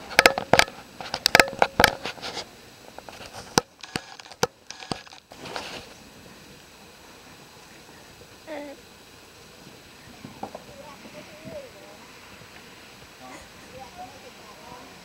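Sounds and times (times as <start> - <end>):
snow crunching: 2.1 - 8.2.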